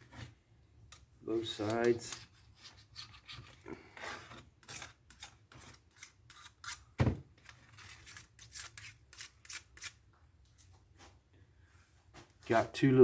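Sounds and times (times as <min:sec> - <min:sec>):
putty knife scraping sawdust: 0:01.4 - 0:10.0.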